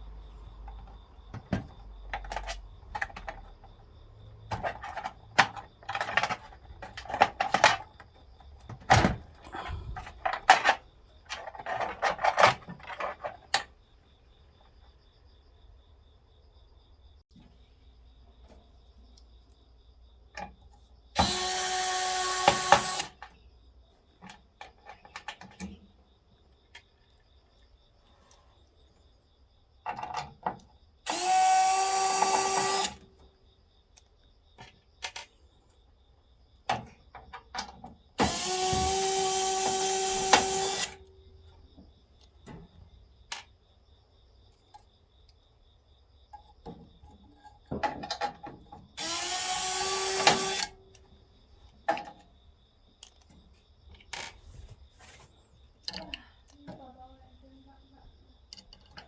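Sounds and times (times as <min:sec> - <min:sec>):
electric screwdriver running: 0:21.2 - 0:23.2, 0:31.1 - 0:33.0, 0:38.2 - 0:41.0, 0:49.0 - 0:50.7.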